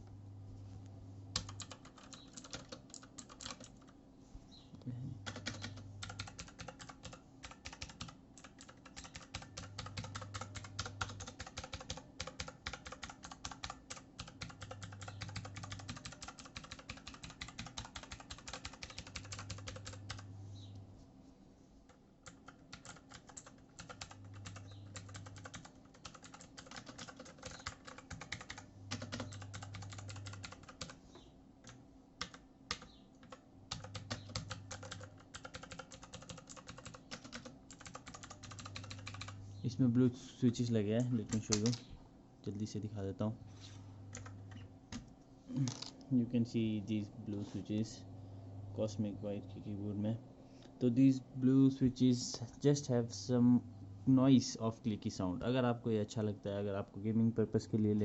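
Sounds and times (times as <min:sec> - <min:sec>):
fast typing on mechanical keyboard: 0:01.4 - 0:03.9, 0:05.2 - 0:20.3, 0:22.2 - 0:31.0, 0:31.6 - 0:39.4, 0:44.1 - 0:45.0.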